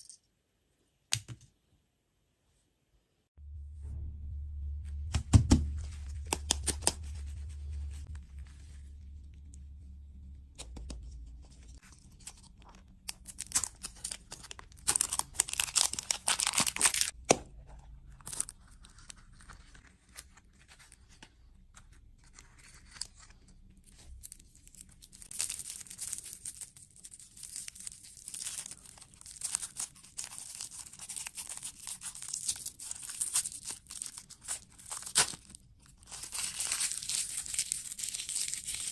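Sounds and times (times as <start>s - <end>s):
food wrappers tearing and crinkling: 11.7s - 17.2s, 18.1s - 21.2s, 22.2s - 38.9s.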